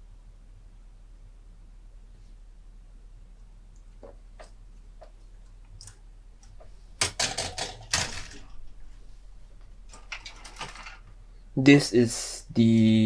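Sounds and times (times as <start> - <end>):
plastic parts clattering and rustling: 7.0 - 8.8, 9.9 - 11.1.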